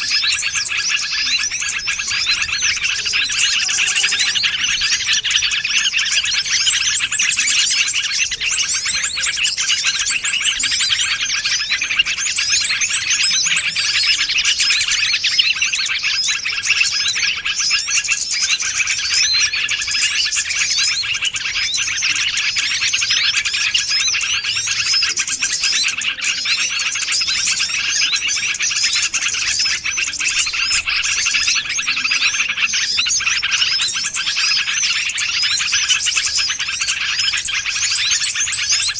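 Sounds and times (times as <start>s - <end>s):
small birds chirping: 0.0s - 38.9s.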